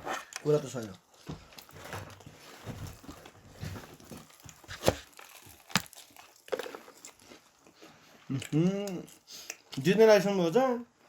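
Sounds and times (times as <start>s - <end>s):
paper wrapping crinkling: 1.6s - 7.2s
meat tearing from bone: 4.4s - 7.2s.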